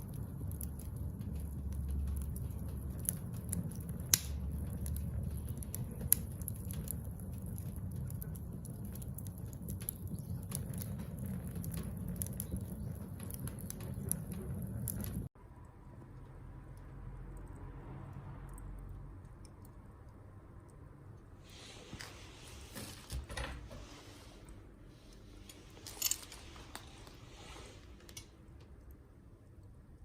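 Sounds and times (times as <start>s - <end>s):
low rumble: 0.0s - 19.5s
fire popping: 0.0s - 23.3s
wood fire crackling: 0.0s - 30.0s.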